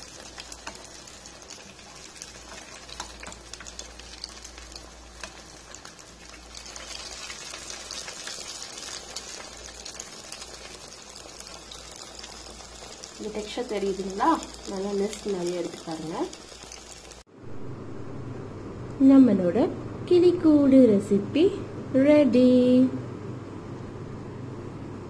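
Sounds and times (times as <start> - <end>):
chicken frying in hot oil: 0.0 - 17.2.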